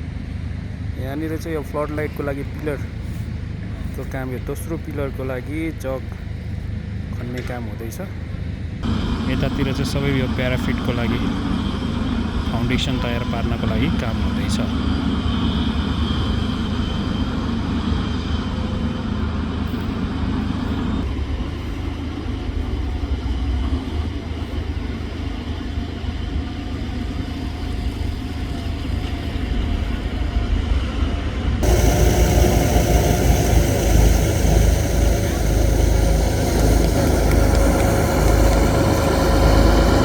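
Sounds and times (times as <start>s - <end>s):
construction machinery engine rumbling: 31.6s - 40.0s.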